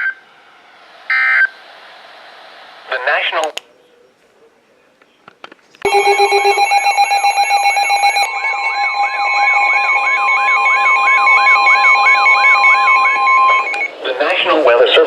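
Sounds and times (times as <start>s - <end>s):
rising alarm sweep: 5.9s - 14.0s
steady beeping tones: 5.9s - 14.0s
steady warning alarm tone: 5.9s - 14.0s.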